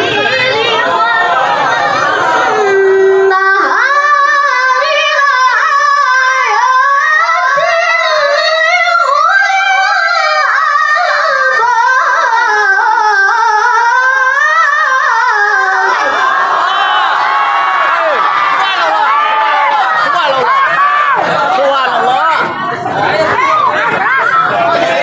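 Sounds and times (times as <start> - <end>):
high voice chanting: 0.0 - 16.7.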